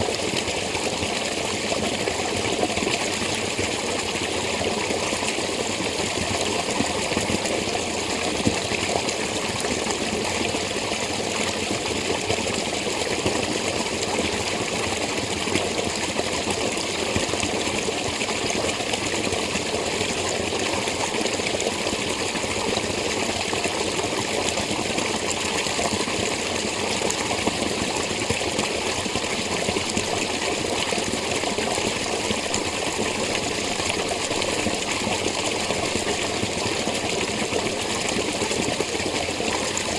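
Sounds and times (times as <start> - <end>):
spring water trickling: 25.8 - 39.9.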